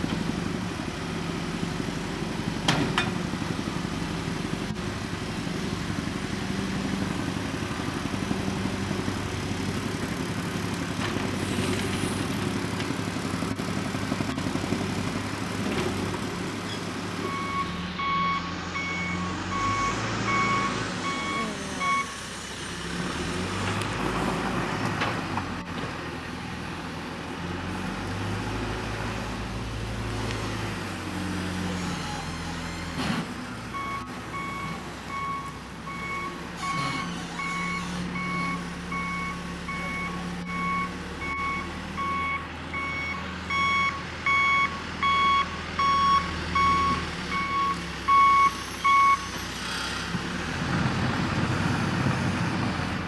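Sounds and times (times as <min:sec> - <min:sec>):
diesel engine revving: 0:00.0 - 0:53.0
reversing alarm beeping: 0:17.3 - 0:22.2, 0:33.8 - 0:49.3.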